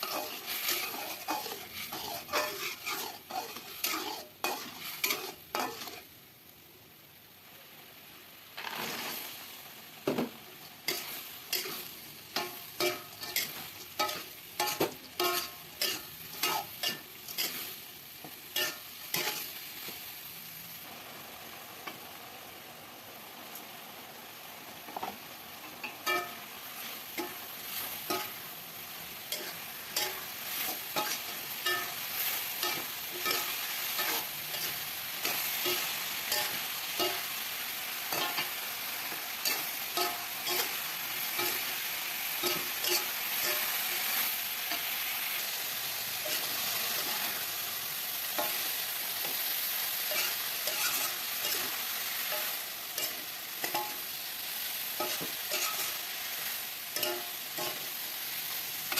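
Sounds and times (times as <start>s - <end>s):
spatula scraping metal pan: 0.0s - 6.0s, 10.9s - 17.7s, 18.6s - 19.5s, 29.3s - 37.3s, 39.4s - 41.7s, 50.1s - 54.0s, 55.0s - 56.0s
food sizzling in oil: 0.0s - 58.9s.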